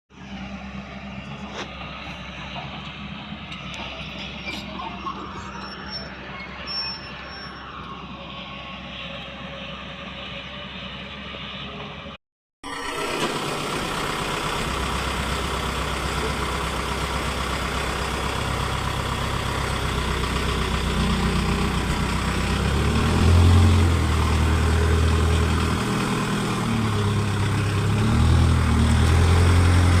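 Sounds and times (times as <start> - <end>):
excavator diesel engine revving: 12.6 - 30.0.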